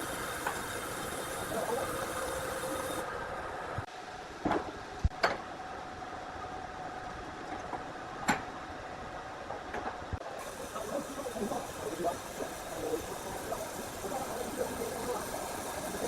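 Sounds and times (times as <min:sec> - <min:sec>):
sawmill machinery running: 0:00.0 - 0:03.8, 0:10.4 - 0:16.0.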